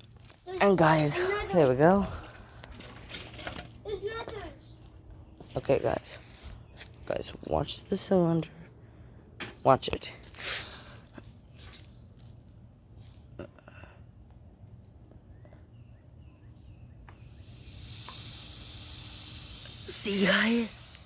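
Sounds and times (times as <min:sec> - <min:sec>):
compressed air hissing: 0:17.1 - 0:21.0.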